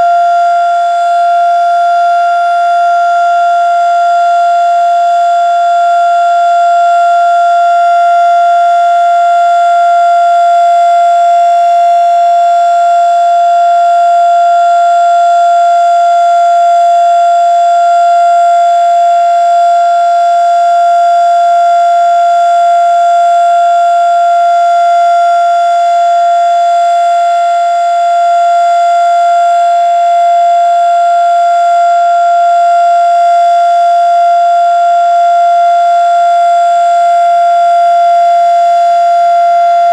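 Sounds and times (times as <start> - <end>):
steady warning siren tone: 0.0 - 39.9.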